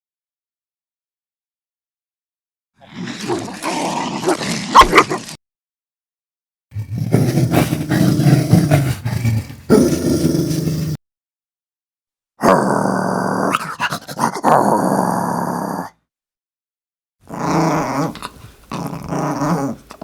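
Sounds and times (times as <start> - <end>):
dog growling: 2.8 - 5.4, 6.8 - 11.0, 12.4 - 16.0, 17.2 - 20.0.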